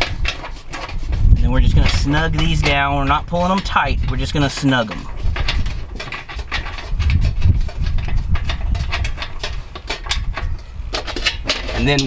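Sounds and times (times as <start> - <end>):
small metallic clicks and knocks: 0.0 - 1.1, 1.7 - 12.0
low rumble of handling: 0.0 - 12.0.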